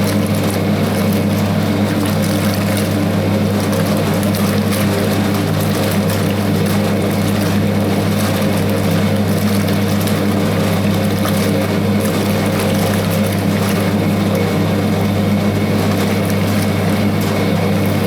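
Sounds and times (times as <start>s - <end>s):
washing machine churning: 0.0s - 18.0s
washing machine motor hum: 0.0s - 18.0s.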